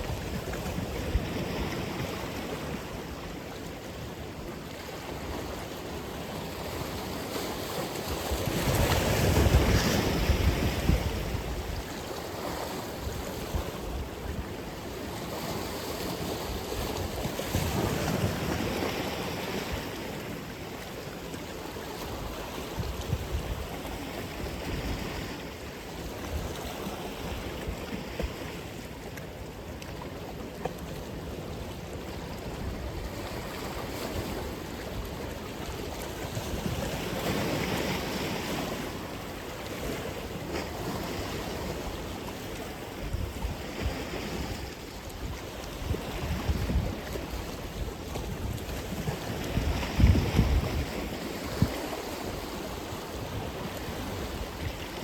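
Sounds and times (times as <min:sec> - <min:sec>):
ocean waves crashing: 0:00.0 - 0:23.0.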